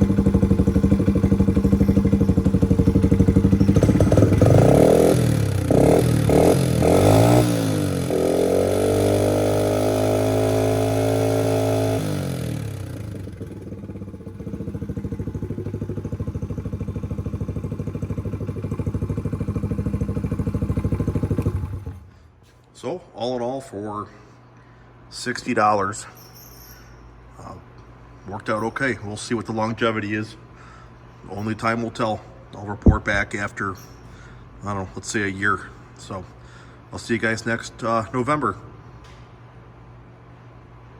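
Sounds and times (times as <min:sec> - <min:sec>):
motorcycle engine idling and revving: 0:00.0 - 0:22.1.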